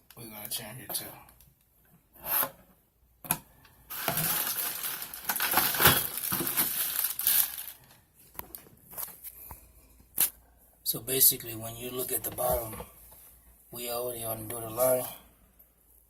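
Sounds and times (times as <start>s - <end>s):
plumbing parts clinking and rustling: 3.9s - 7.6s.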